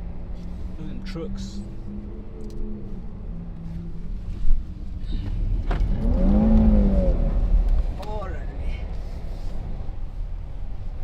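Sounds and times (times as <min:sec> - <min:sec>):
car tyres and engine rumble: 0:00.0 - 0:11.0
engine revving: 0:05.6 - 0:08.1.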